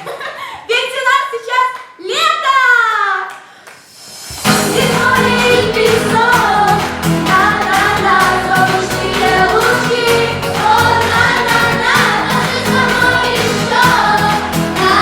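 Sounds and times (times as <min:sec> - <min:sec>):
backing track with steady beat: 0:03.9 - 0:15.0
person singing: 0:04.4 - 0:15.0.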